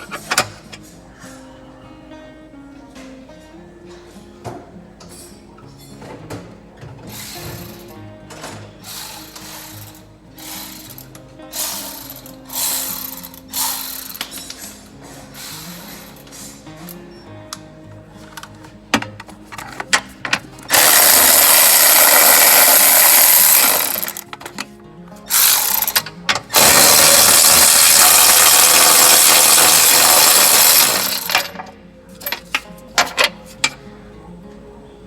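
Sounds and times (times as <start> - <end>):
hand tools clicking and clanking: 0.0 - 1.0, 5.0 - 17.1, 18.2 - 33.8
power tool running: 7.1 - 7.9, 8.9 - 14.3, 20.7 - 24.2, 25.3 - 31.7.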